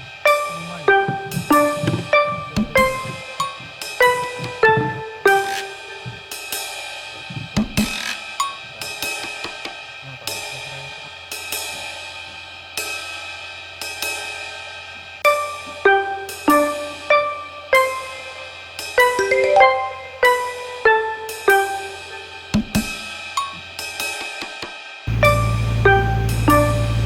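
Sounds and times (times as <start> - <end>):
ringing note melody: 19.0 - 20.6.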